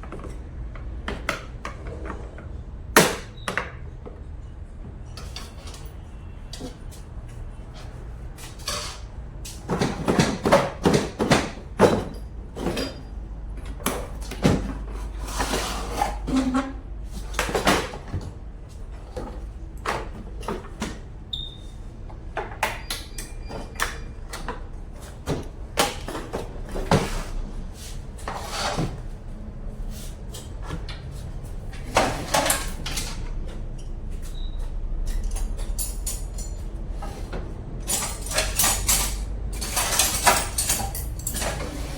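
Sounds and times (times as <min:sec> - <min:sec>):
hand tools clanking on metal: 0:08.4 - 0:18.3, 0:31.7 - 0:41.9.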